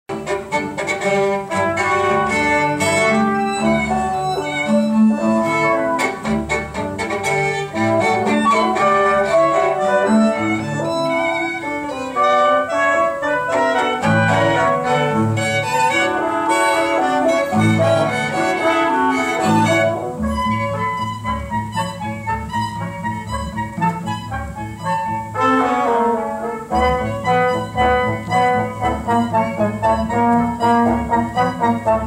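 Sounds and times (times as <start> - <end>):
string music over loudspeakers: 0.1 - 32.0.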